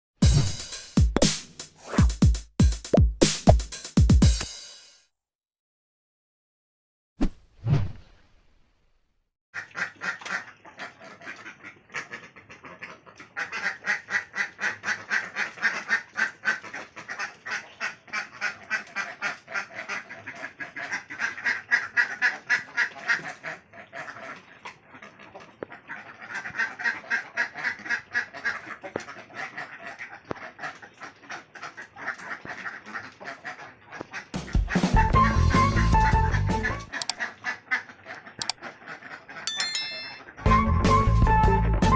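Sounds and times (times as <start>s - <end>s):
ducks quacking: 9.6s - 34.9s, 36.6s - 39.4s.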